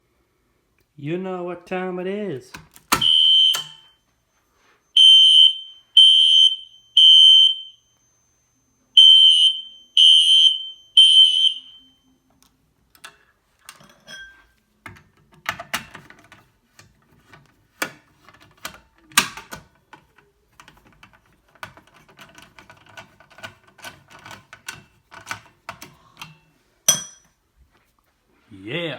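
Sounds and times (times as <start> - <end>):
fire alarm beeping: 2.9 - 12.3.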